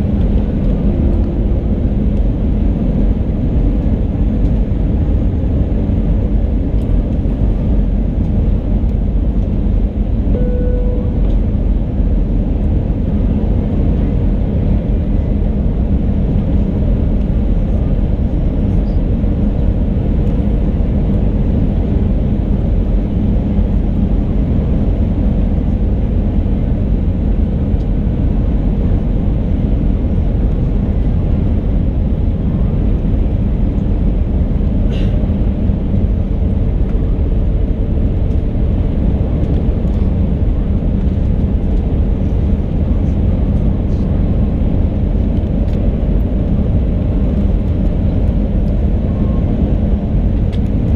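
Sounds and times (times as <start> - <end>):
airplane cabin engine noise: 0.0 - 50.9
faint steady hum: 10.2 - 11.4.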